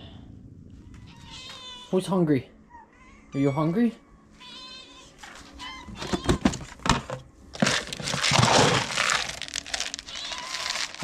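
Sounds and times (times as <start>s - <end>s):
loud crinkling rustle: 7.6s - 11.0s
cat meowing: 10.0s - 11.0s.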